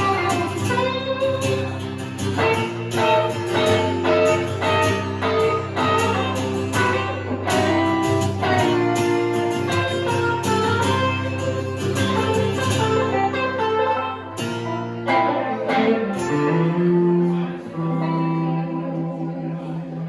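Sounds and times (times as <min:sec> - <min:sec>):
held bass: 0:00.0 - 0:13.7
guitars playing: 0:00.0 - 0:20.0.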